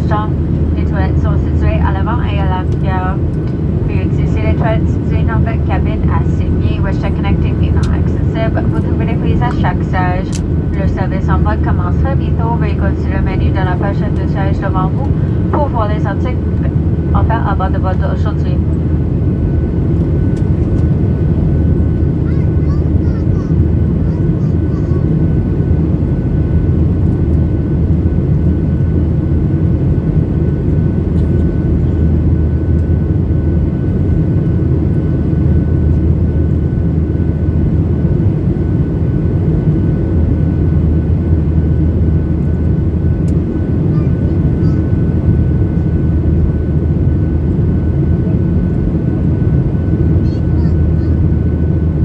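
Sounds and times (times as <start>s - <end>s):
airplane cabin engine roar: 0.0s - 52.0s.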